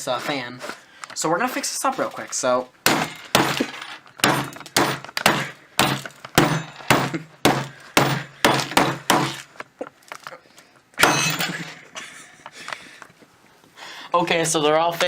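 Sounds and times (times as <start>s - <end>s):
hammer striking computer hardware: 2.9s - 9.4s, 11.0s - 11.7s.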